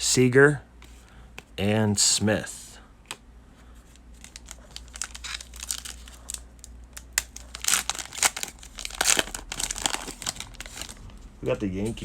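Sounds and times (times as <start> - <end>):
plastic wrapper crinkling and tearing: 4.2 - 11.1.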